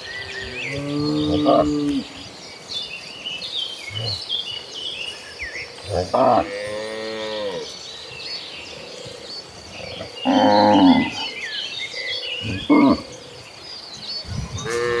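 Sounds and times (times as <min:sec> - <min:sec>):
cattle mooing: 0:14.6 - 0:15.0.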